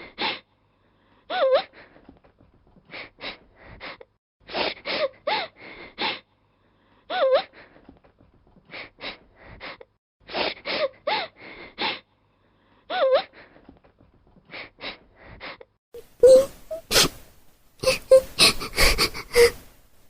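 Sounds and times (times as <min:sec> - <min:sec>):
person sobbing: 0:16.0 - 0:17.1, 0:17.8 - 0:19.8
gasping breaths: 0:17.8 - 0:19.8.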